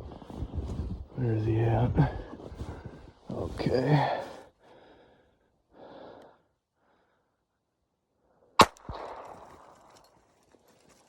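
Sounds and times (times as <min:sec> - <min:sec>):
sharp gunshot with echo: 0:08.6 - 0:09.8.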